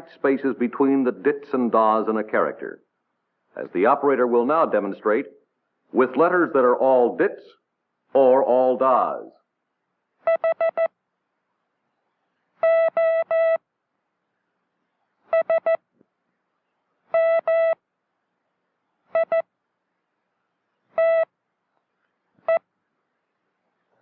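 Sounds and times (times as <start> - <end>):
morse code beeping: 10.3 - 10.9, 12.6 - 13.6, 15.3 - 15.8, 17.1 - 17.8, 19.1 - 19.5, 21.0 - 21.3.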